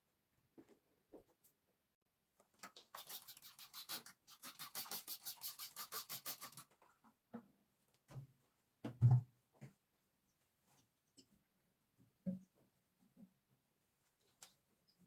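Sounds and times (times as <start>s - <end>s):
scrubbing strokes: 2.9s - 6.7s.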